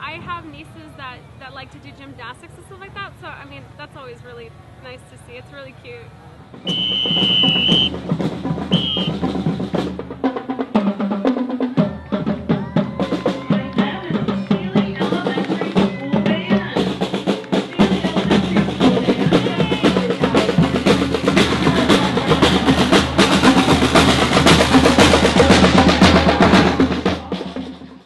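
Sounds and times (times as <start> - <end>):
bass drum: 6.6 - 28.0
snare drum rolls: 6.6 - 28.0.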